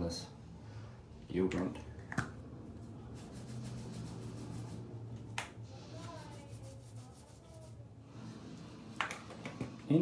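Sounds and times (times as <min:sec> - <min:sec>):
soft rubbing and handling: 0:02.6 - 0:09.0.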